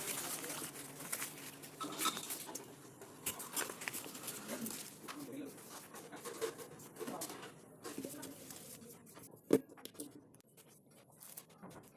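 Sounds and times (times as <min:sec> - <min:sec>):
packaging clicks and rustles: 0:00.0 - 0:09.3.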